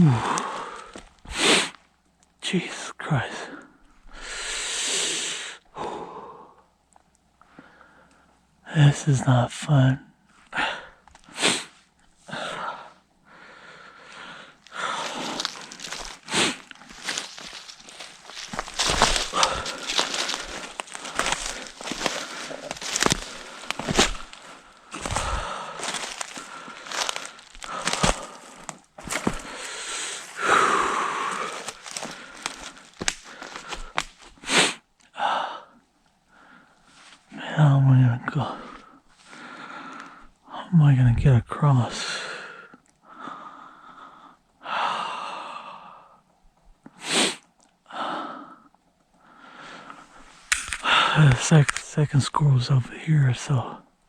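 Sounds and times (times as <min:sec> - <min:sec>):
person breathing hard and sniffing: 0:00.0 - 0:01.8, 0:04.1 - 0:06.6, 0:10.6 - 0:34.8, 0:49.2 - 0:51.4
footsteps crunching through dry leaves: 0:14.6 - 0:34.4
twigs snapping: 0:14.6 - 0:34.4, 0:50.4 - 0:51.9.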